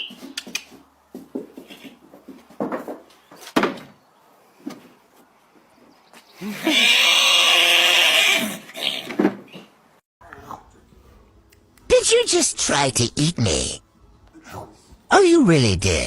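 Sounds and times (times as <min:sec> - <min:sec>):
horse calling harshly: 0:06.4 - 0:09.2.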